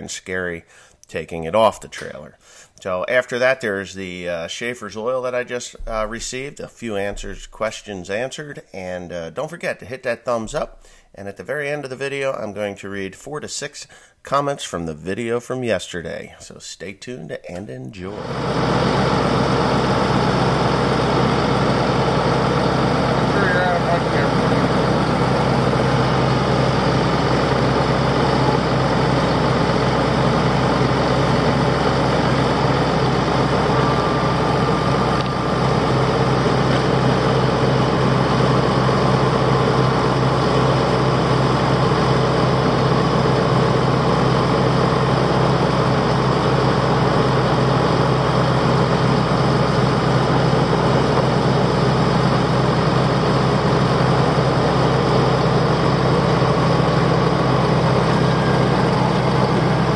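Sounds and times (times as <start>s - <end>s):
vehicle engine running: 18.1s - 59.9s.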